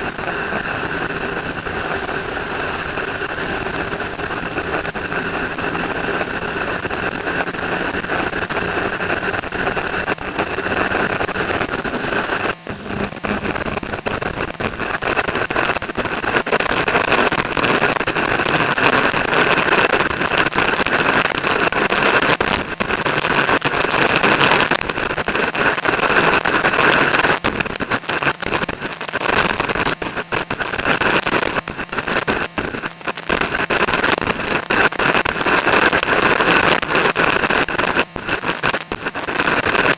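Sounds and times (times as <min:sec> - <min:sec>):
vehicle engine running: 0:00.0 - 0:22.0
wind rushing over microphone: 0:00.0 - 0:39.9.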